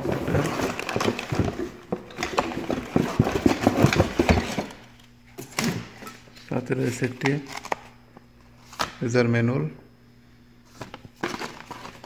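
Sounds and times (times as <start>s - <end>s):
packaging rustling: 0.0s - 5.0s, 10.8s - 12.0s.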